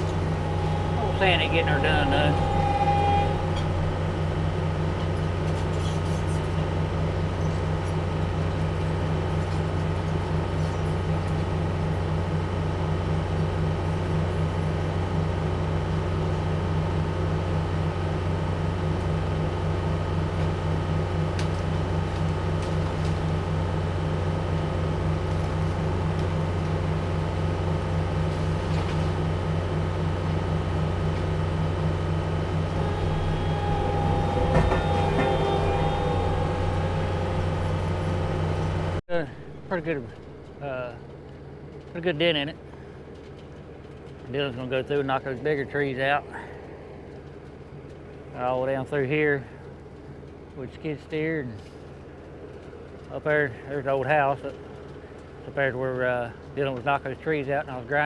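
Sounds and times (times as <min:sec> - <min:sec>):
diesel engine droning: 0:00.0 - 0:42.9.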